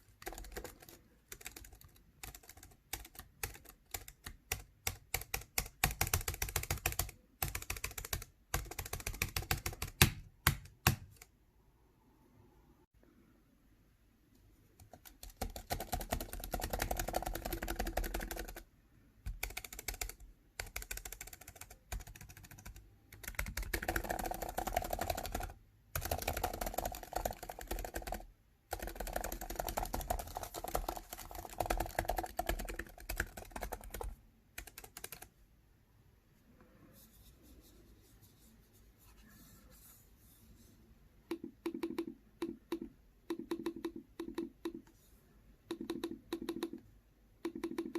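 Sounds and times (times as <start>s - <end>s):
typing on computer keyboard: 0.0s - 11.4s, 14.8s - 35.3s, 41.3s - 44.9s, 45.6s - 47.9s.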